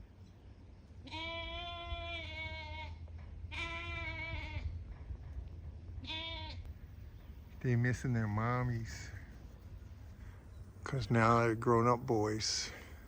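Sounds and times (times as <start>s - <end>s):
rams bleating: 1.0s - 4.7s, 6.0s - 6.7s.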